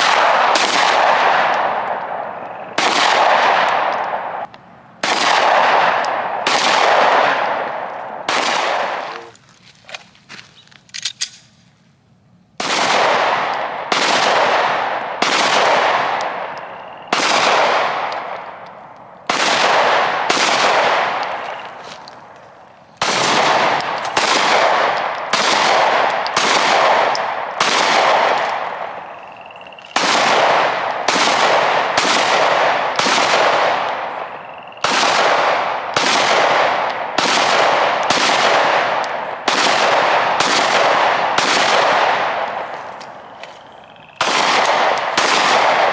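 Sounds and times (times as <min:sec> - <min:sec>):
single gunshots echoing: 0:00.0 - 0:09.3, 0:12.6 - 0:18.4, 0:23.0 - 0:42.7, 0:44.2 - 0:45.9.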